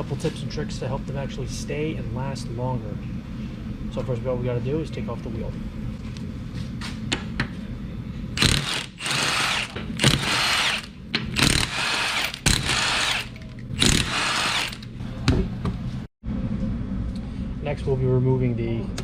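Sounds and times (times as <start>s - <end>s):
impact wrench bursts: 8.4s - 15.0s.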